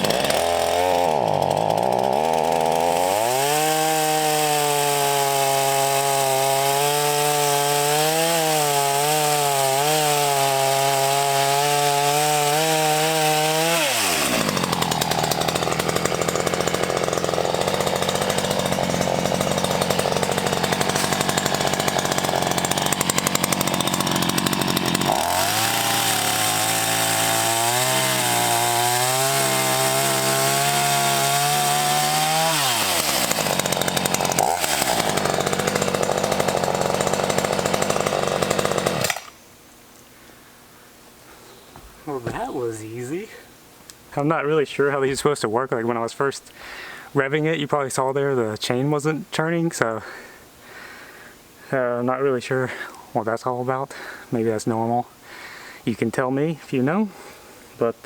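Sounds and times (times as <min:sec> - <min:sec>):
chainsaw cutting wood: 0:00.0 - 0:39.4.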